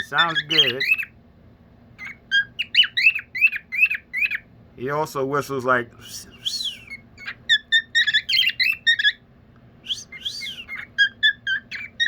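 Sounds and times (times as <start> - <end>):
bird rising and falling call: 0.0 - 1.1, 6.4 - 9.2, 9.9 - 12.0
bird chirping: 0.0 - 1.2, 1.9 - 4.5, 6.0 - 12.0.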